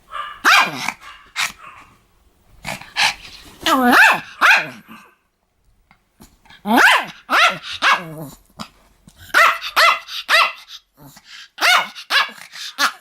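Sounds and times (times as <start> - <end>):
dog barking: 0.1 - 2.0, 3.8 - 5.1, 6.7 - 8.2, 9.2 - 10.7, 11.6 - 13.0.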